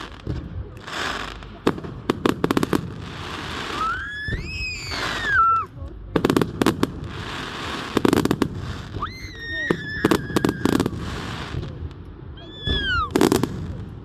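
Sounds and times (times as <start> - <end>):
fireworks crackling bangs: 0.0 - 14.0
fireworks hissing: 0.0 - 14.0
whistling firework: 2.2 - 14.0.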